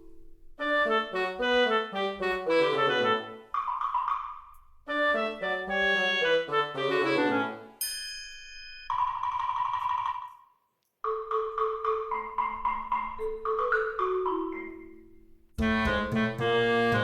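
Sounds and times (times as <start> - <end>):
mallet percussion tune: 7.8 - 10.4, 11.0 - 15.4.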